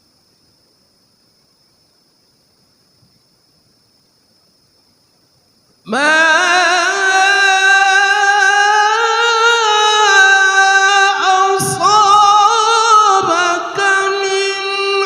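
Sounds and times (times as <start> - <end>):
man reciting in sung voice: 5.9 - 15.0.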